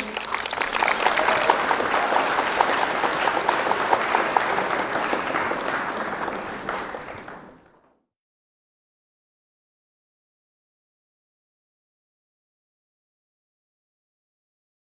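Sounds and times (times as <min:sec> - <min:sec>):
audience applauding: 0:00.0 - 0:07.9.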